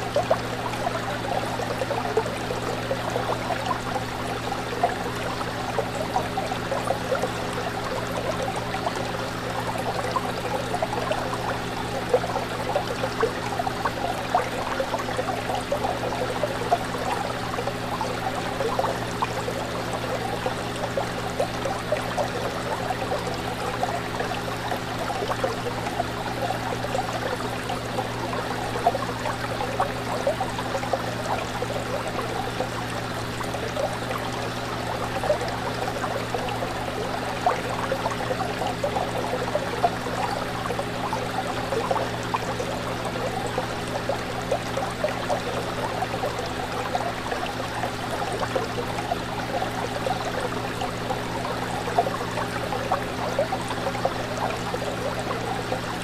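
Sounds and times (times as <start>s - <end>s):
aquarium water bubbling: 0.0s - 56.0s
constant low hum: 0.0s - 56.0s.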